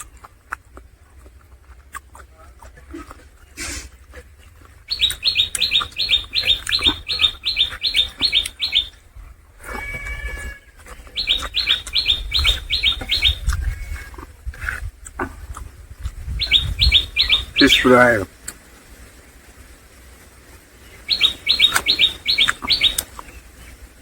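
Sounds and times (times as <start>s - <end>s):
small bird chirping: 0.0s - 9.1s, 9.7s - 18.3s, 20.8s - 24.0s
bird pitched call: 4.6s - 9.0s, 9.7s - 14.2s, 16.4s - 18.3s, 20.8s - 23.8s.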